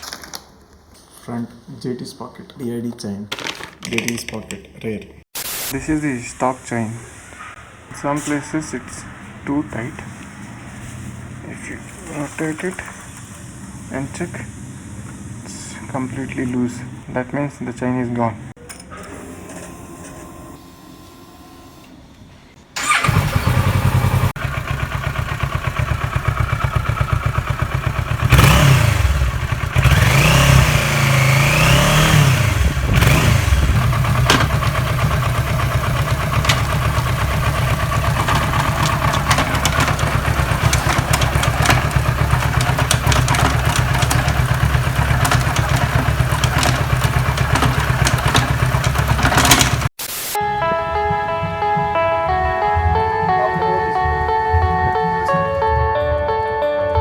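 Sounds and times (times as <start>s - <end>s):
motorcycle engine starting and idling: 22.8s - 50.0s.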